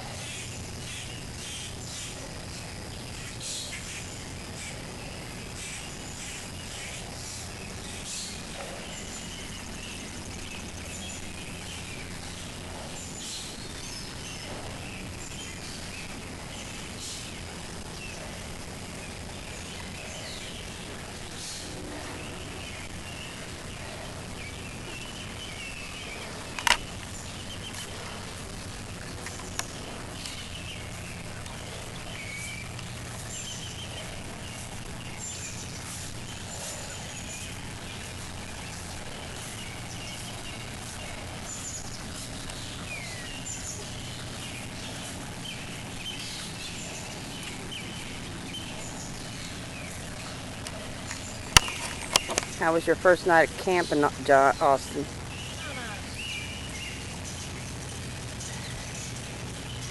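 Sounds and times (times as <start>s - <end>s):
birds chirping and calling: 0.0s - 59.9s
low background hum: 0.0s - 59.9s.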